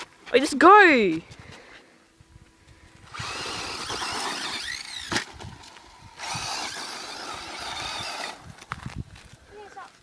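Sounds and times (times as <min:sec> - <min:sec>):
remote control car motor whining: 0:03.0 - 0:08.7
wheels rolling on rough ground: 0:03.0 - 0:10.0.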